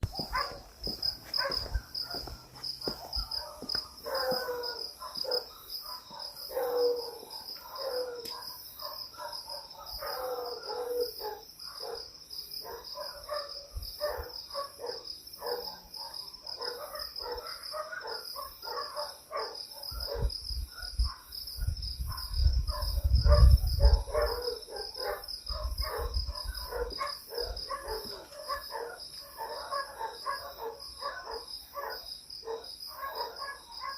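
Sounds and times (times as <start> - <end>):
crickets chirping: 0.0 - 33.9
dogs barking and howling: 0.1 - 21.3, 22.1 - 33.9.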